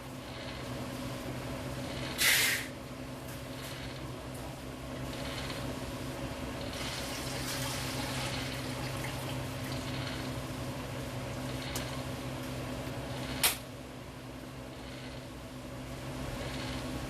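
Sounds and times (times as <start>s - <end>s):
water running: 7.0s - 9.9s.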